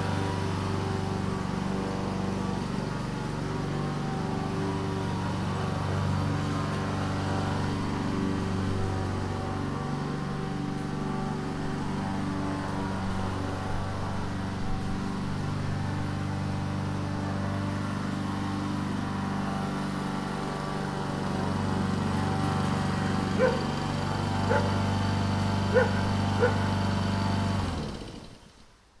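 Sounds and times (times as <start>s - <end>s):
lawn mower engine running: 0.0s - 28.7s
dog barking: 23.4s - 23.7s, 24.5s - 24.8s, 25.7s - 26.7s.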